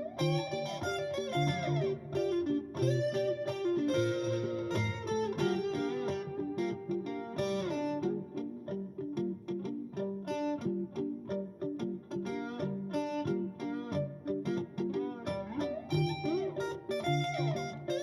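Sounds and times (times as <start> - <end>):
picked guitar with ringing chords: 0.0 - 18.0.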